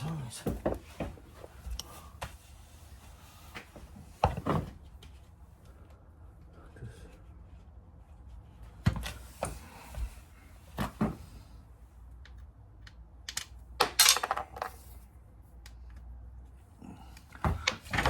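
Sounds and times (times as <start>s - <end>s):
metal parts clattering: 13.3s - 14.8s.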